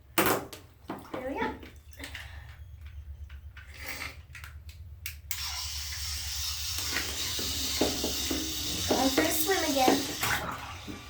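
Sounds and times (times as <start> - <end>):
water running into a bathtub: 5.4 - 11.0.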